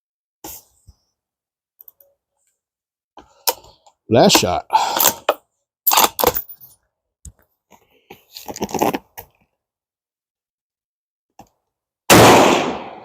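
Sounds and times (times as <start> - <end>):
rifle shot: 12.1 - 13.0.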